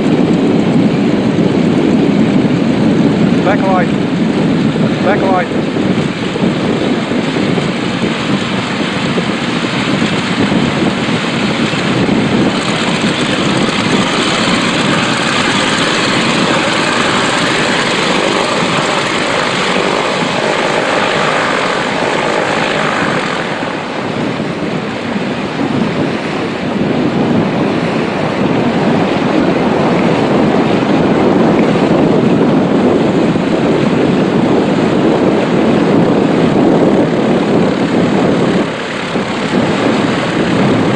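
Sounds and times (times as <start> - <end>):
seaplane engine and propeller running: 0.0 - 40.9.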